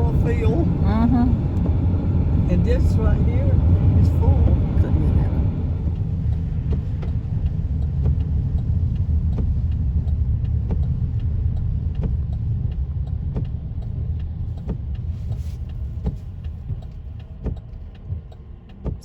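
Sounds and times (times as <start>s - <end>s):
road and engine rumble: 0.0s - 19.0s
light ticking: 0.3s - 19.0s.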